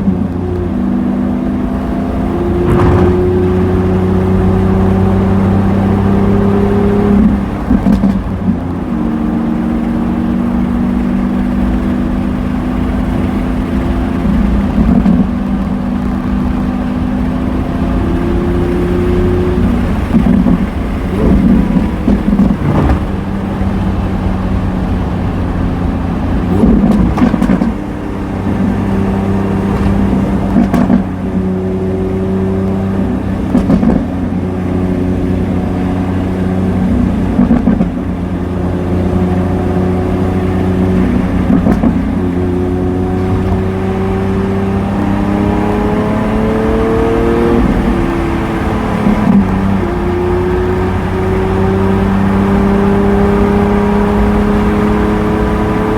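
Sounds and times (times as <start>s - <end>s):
car engine drone: 0.0s - 55.9s
sharp exhaust crackles: 2.1s - 6.2s, 14.1s - 31.5s.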